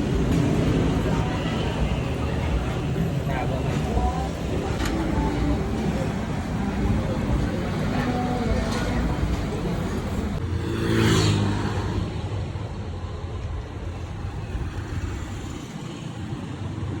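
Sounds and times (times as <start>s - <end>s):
low rumble of traffic: 0.0s - 17.0s
vehicle engine passing: 5.4s - 12.1s.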